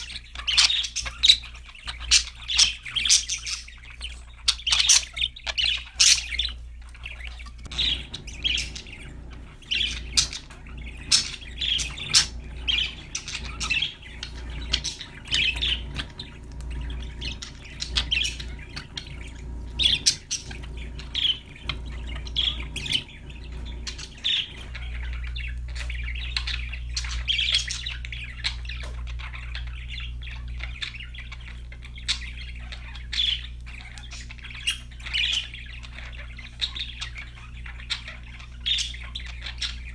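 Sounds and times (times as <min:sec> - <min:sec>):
budgerigars chirping and squawking: 0:00.0 - 0:39.9
low background hum: 0:00.0 - 0:39.9.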